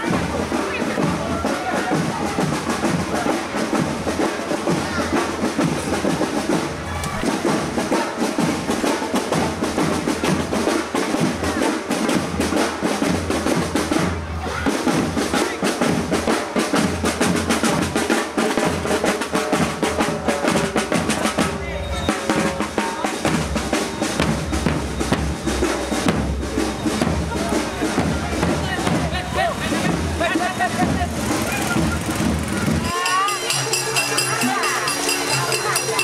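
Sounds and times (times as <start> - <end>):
music: 0.0 - 36.0
parade drumming: 0.0 - 36.0.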